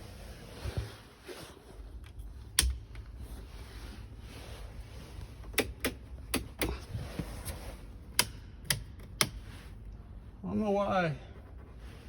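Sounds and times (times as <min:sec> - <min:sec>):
low steady hum: 0:00.0 - 0:12.0
sharp clicks and taps: 0:08.1 - 0:09.4.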